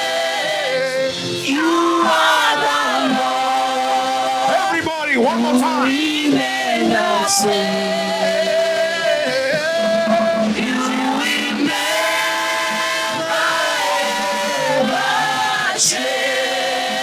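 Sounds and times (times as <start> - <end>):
congregation singing: 0.0 - 17.0.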